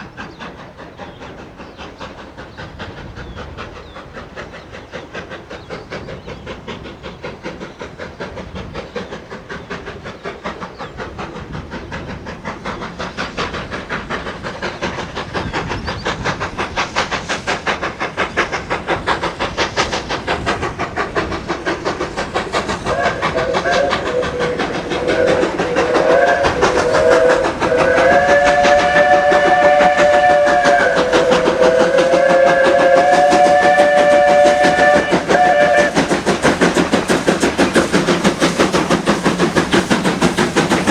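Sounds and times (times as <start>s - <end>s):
steam locomotive exhaust beats: 0.0s - 40.9s
steam whistle chord: 26.0s - 35.9s.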